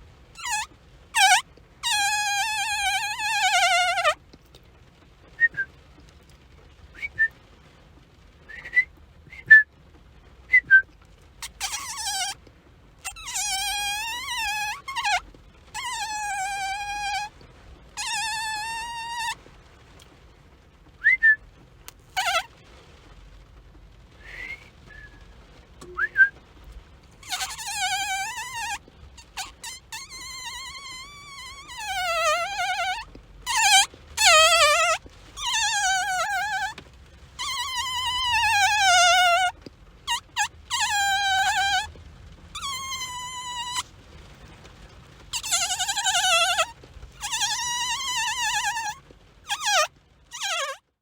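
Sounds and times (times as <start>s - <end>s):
high-pitched whistle chirps and squeals: 0.4s - 4.2s, 11.4s - 12.4s, 13.0s - 15.2s, 15.8s - 17.3s, 18.0s - 19.4s, 22.1s - 22.5s, 27.2s - 36.8s, 37.4s - 41.9s, 42.6s - 43.9s, 45.3s - 50.8s.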